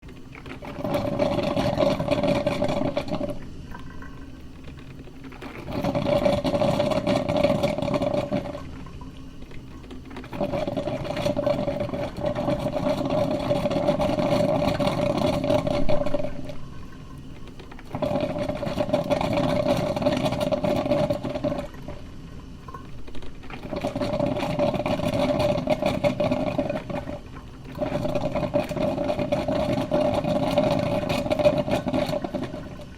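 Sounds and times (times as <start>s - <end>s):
coffee maker gurgling: 0.0s - 32.9s.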